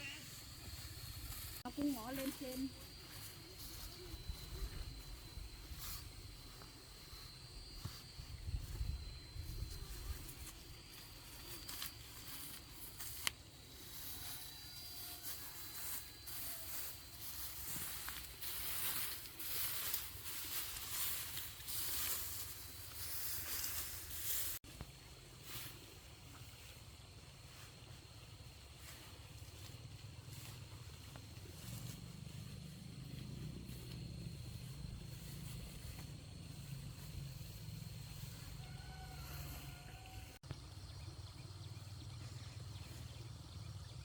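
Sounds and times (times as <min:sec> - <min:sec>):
faint high whine: 0:00.0 - 0:24.6
rustling and swishing: 0:00.2 - 0:24.6.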